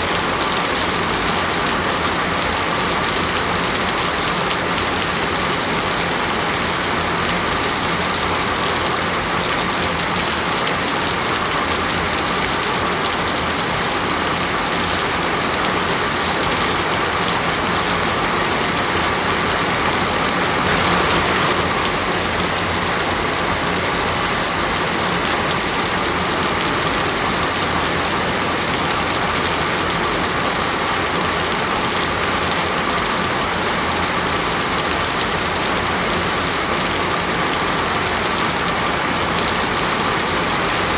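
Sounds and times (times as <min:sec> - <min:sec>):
heavy rain pattering: 0:00.0 - 0:40.9.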